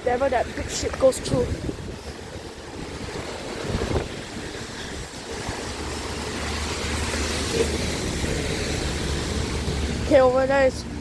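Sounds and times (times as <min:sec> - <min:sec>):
wind buffeting microphone: 0:00.0 - 0:11.0
passing vehicle engine rumble: 0:00.2 - 0:11.0.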